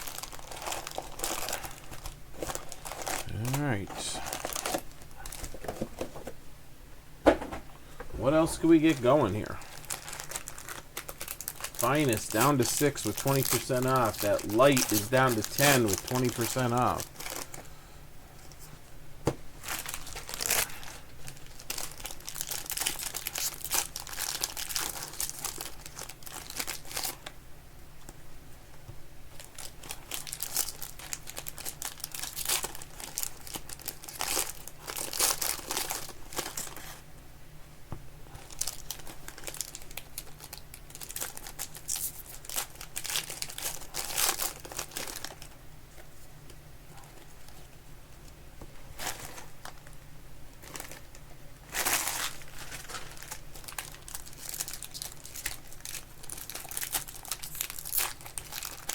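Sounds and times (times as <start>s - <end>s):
foil wrappers tearing and crinkling: 0.0s - 5.8s, 8.4s - 17.6s, 19.6s - 27.3s, 29.4s - 37.0s, 38.3s - 45.5s, 48.9s - 50.0s, 50.6s - 58.9s.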